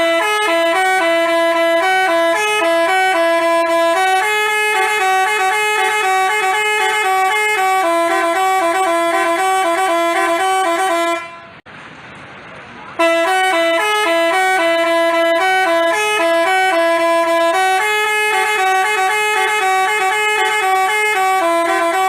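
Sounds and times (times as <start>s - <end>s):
musical bus horn playing fast tune: 0.0s - 11.6s, 13.0s - 22.0s.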